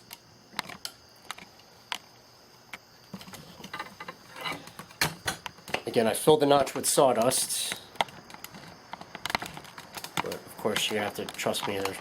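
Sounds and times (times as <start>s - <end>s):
wooden parts clicking and knocking: 3.1s - 5.9s, 7.2s - 12.0s.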